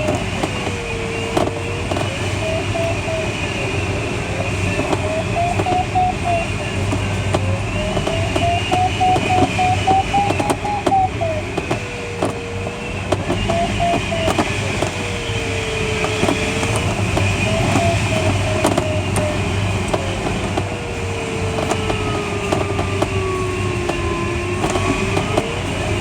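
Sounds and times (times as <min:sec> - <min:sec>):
airflow rushing over cockpit: 0:00.2 - 0:20.5
variometer tone and beeps: 0:02.4 - 0:03.6, 0:04.6 - 0:11.4, 0:13.4 - 0:14.4
sharp clicks and knocks: 0:04.7 - 0:12.4.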